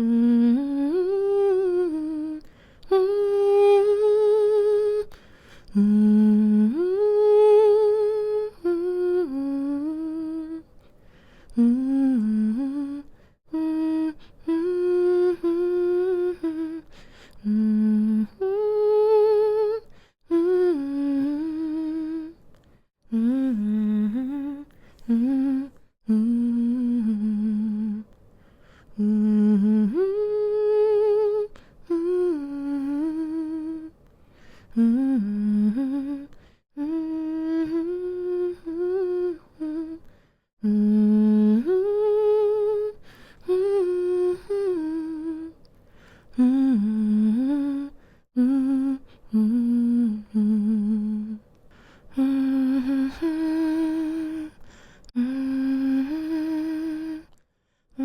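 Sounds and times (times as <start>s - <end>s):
woman humming a lullaby: 0.0s - 5.1s, 11.6s - 22.4s, 34.8s - 40.0s, 55.2s - 57.4s.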